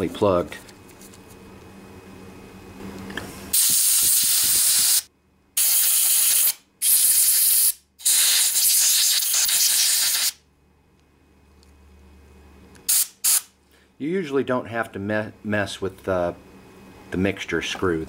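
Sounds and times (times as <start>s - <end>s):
pressurized spray hissing: 3.6s - 5.0s.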